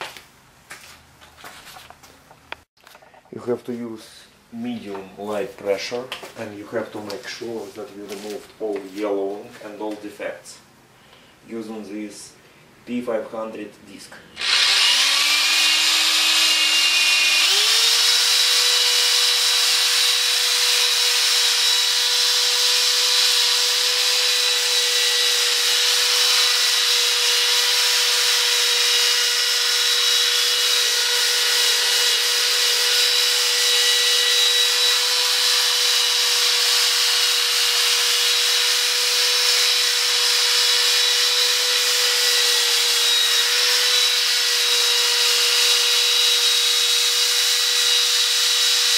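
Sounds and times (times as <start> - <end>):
electric drill motor whine: 14.4 - 48.9.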